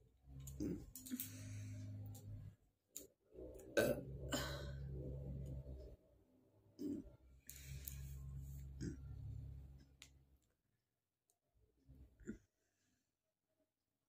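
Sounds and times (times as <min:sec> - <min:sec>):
person burping: 0:00.5 - 0:01.0, 0:03.7 - 0:05.2, 0:06.8 - 0:07.1, 0:08.8 - 0:09.2, 0:12.2 - 0:12.4.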